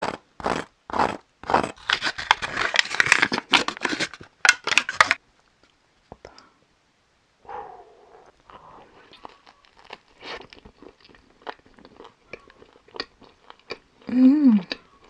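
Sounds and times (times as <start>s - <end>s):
food packaging tearing and crinkling: 1.0s - 5.2s.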